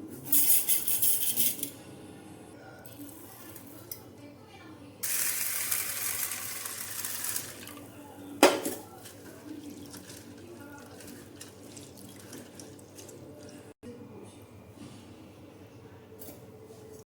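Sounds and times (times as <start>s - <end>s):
water running from tap: 5.0s - 7.9s, 9.3s - 13.6s
dishes clattering: 8.4s - 13.1s.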